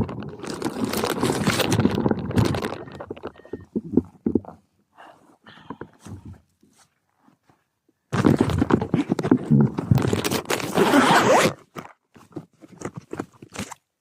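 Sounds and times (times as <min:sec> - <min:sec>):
gear scraping at microphone: 0:00.0 - 0:04.5, 0:08.2 - 0:11.6.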